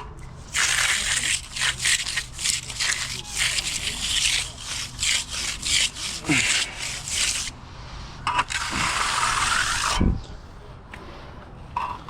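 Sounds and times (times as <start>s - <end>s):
scraping on wet concrete: 0.4s - 10.0s
rushing scrape: 0.5s - 10.1s.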